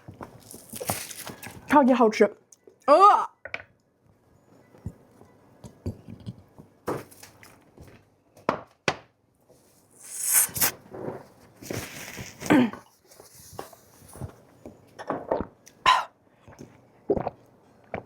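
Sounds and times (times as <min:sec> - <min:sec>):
noisy chewing or slurping: 0:10.0 - 0:10.8, 0:15.3 - 0:18.0
mouth clicks and smacks: 0:15.3 - 0:18.0.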